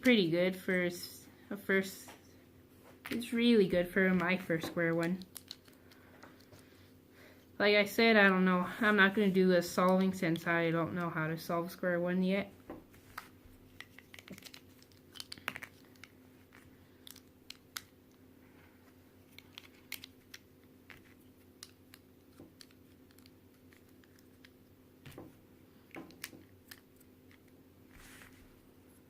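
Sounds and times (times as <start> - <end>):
plastic puzzle pieces clicking: 4.9 - 6.6, 13.8 - 17.9, 19.3 - 24.6, 26.0 - 27.5.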